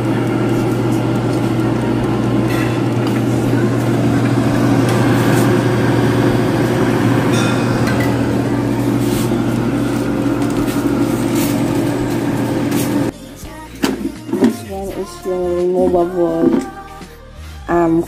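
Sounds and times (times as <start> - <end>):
loud mechanical hum: 0.0 - 13.1.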